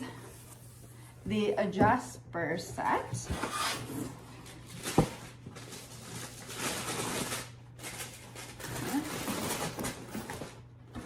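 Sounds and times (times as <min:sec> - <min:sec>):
packaging rustling and crinkling: 0:03.4 - 0:10.6.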